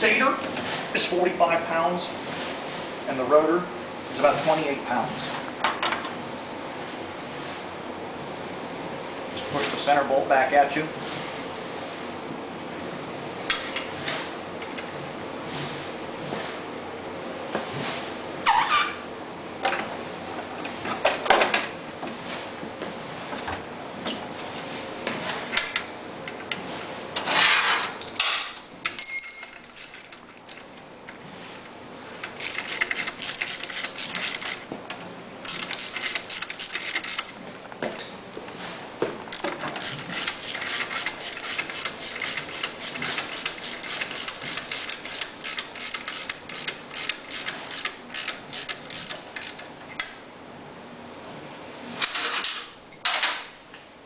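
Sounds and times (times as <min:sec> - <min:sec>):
short metallic ring: 0:28.5 - 0:29.9
ratchet wrench clicking: 0:32.4 - 0:34.6, 0:35.5 - 0:37.3, 0:39.4 - 0:49.6.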